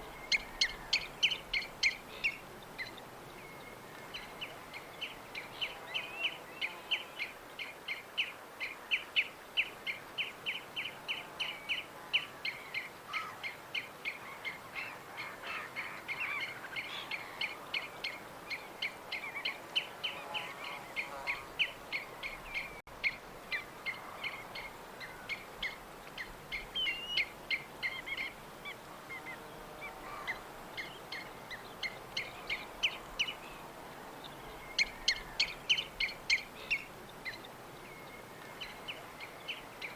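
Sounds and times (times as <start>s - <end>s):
soft outdoor hiss: 0.0s - 39.9s
songbirds chirping: 0.0s - 39.9s
faint bird calls: 12.5s - 33.6s.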